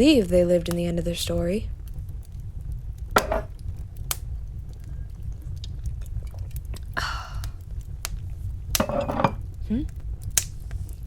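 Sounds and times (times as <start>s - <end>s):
low rumble: 0.0s - 10.4s
wood fire crackling: 0.0s - 11.0s.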